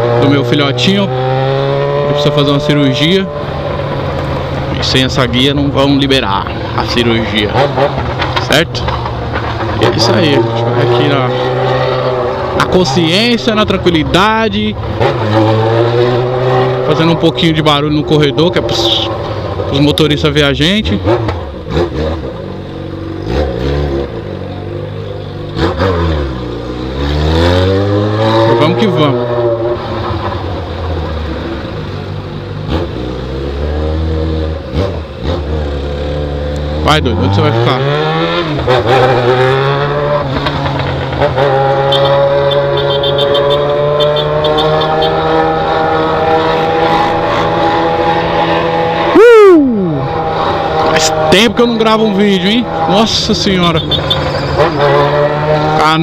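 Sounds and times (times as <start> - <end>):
motorcycle engine revving: 0.0 - 56.0.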